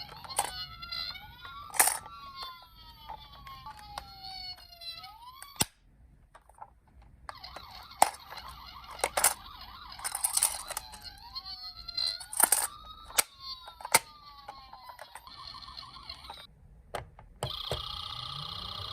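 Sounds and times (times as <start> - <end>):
toy clicks from handling: 0.0 - 4.2, 7.3 - 11.3, 11.9 - 15.5
toy electronic siren: 0.0 - 5.7, 7.3 - 16.5, 17.4 - 18.9.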